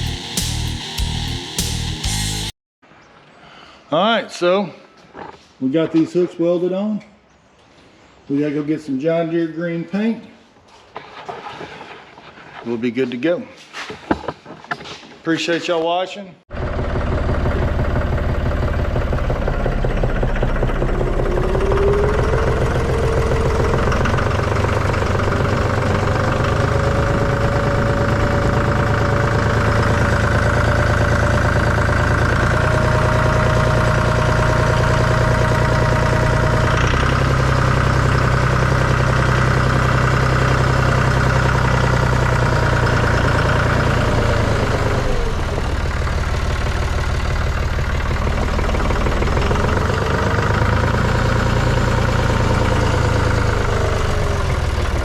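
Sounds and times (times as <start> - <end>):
rising whine: 0.0 - 2.5
tractor engine running: 0.0 - 2.5, 16.5 - 55.0.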